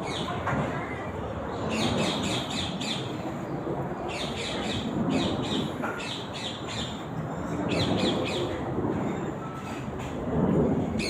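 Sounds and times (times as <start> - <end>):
steady background noise: 0.0 - 11.0.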